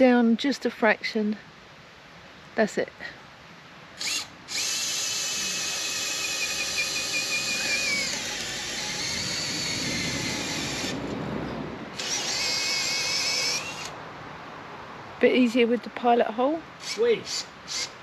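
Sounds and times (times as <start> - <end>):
electric drill drilling into wood: 4.0 - 11.1, 11.9 - 13.9.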